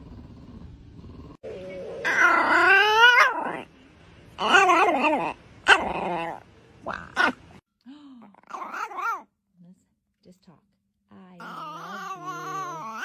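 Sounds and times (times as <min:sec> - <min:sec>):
dog howling: 0:01.5 - 0:03.7, 0:04.4 - 0:06.4, 0:11.4 - 0:13.0.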